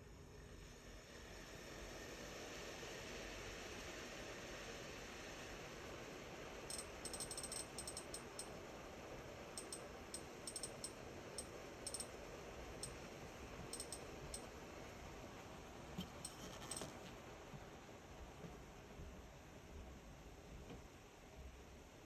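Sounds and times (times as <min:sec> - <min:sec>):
cooktop high-pitched clicking: 0:06.7 - 0:08.6, 0:09.6 - 0:14.6, 0:16.0 - 0:17.1.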